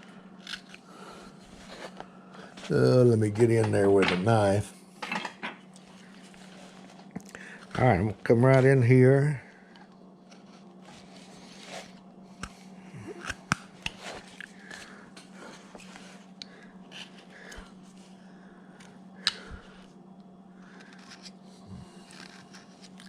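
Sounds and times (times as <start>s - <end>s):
steady low hum: 0.0s - 23.0s
knife cutting and scraping wood: 20.8s - 23.0s.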